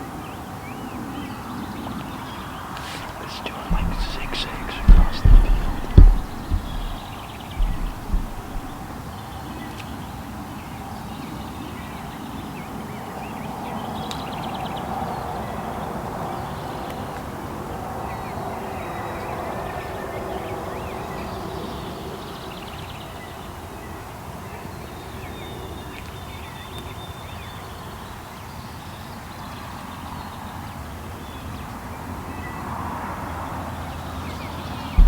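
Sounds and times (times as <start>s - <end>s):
songbirds chirping: 2.8s - 9.1s.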